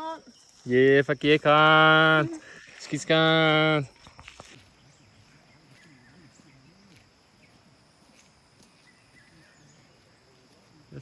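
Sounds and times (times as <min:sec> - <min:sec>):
high insect drone: 0:00.0 - 0:11.0
faint bird chirps: 0:04.5 - 0:11.0.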